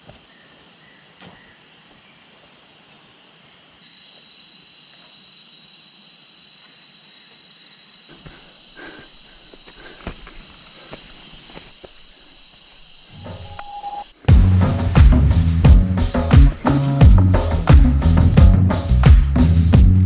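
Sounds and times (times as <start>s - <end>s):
insects shrilling: 0.0s - 19.0s
high piercing tone: 13.1s - 14.2s.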